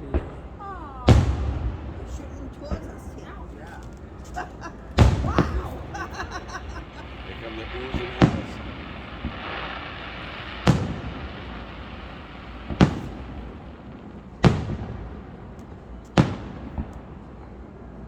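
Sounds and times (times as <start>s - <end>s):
firework shells booming: 0.0s - 17.3s
small firework pop: 12.7s - 13.5s.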